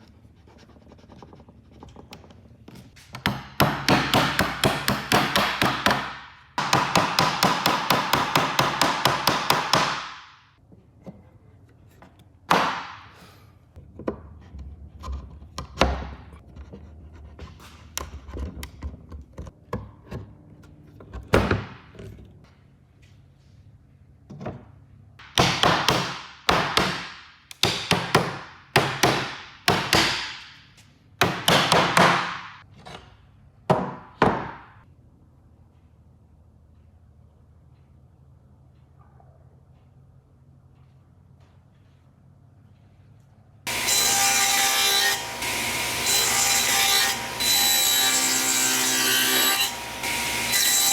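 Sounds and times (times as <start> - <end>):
hammering on wood: 3.2 - 10.4, 12.5 - 13.1, 25.2 - 30.6, 31.2 - 32.6, 33.7 - 34.8.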